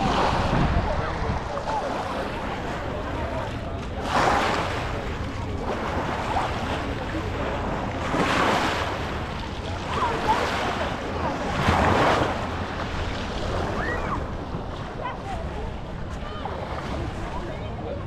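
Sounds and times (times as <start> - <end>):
wind on microphone: 0.0 - 2.2
small waves washing on shore: 0.0 - 18.0.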